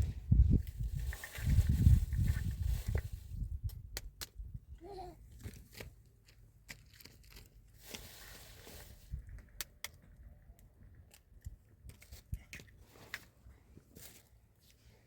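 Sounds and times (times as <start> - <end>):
small clicks and knocks: 5.4 - 7.6.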